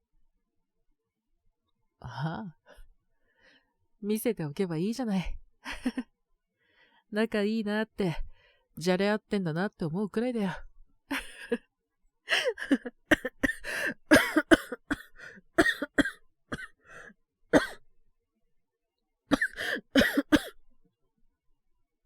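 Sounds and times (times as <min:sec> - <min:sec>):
person coughing: 0:12.4 - 0:16.7, 0:17.6 - 0:17.8, 0:19.3 - 0:20.6.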